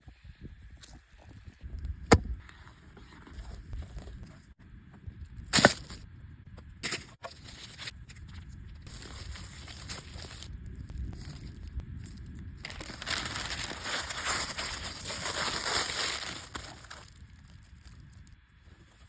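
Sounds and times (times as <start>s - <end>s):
crackling and rustling handling noise: 6.8s - 19.0s.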